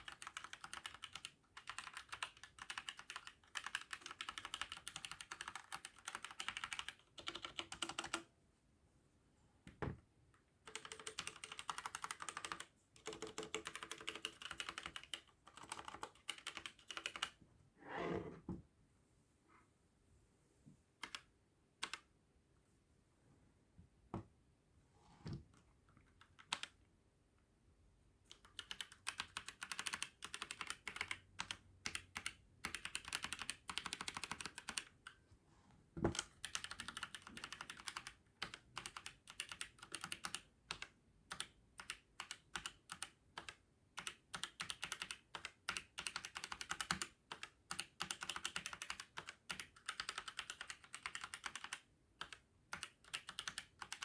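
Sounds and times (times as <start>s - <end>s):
mechanical keyboard typing: 0.0s - 8.3s, 10.7s - 17.4s, 21.0s - 21.2s, 21.8s - 22.1s, 26.2s - 26.8s, 28.3s - 35.2s, 36.1s - 54.0s.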